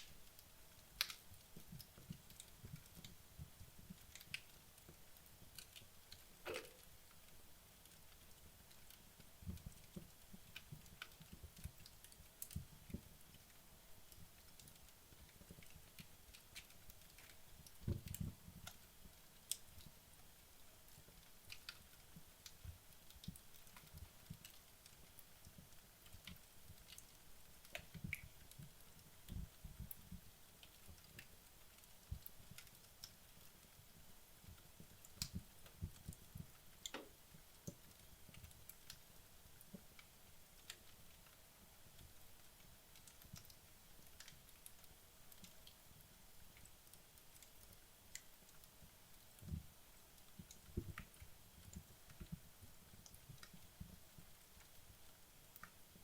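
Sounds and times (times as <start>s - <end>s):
logs crackling in fireplace: 0.0s - 56.0s.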